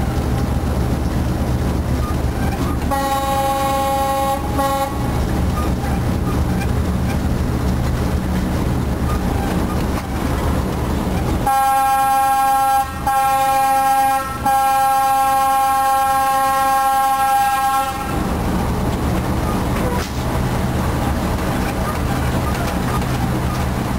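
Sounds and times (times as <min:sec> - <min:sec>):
locomotive engine rumble: 0:00.0 - 0:23.9
locomotive horn chord: 0:02.9 - 0:05.2, 0:11.4 - 0:18.2.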